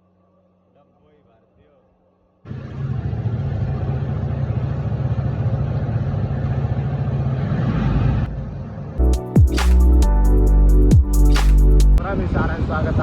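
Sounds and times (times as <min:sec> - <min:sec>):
motorcycle engine running: 0:02.5 - 0:07.4.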